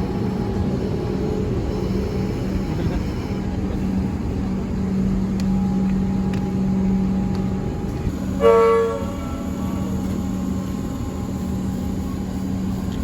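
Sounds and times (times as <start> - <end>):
train horn blast: 0.0 - 13.0
train rumbling: 0.0 - 13.0.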